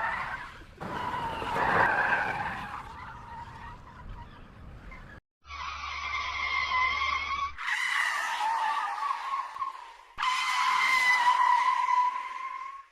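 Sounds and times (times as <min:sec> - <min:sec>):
car tires screeching: 0:00.0 - 0:04.1, 0:05.6 - 0:12.9.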